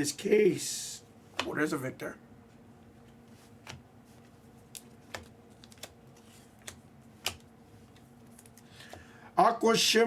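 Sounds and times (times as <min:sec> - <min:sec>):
faint steady hum: 0:00.0 - 0:10.0
cards clicking being flicked: 0:06.6 - 0:07.5.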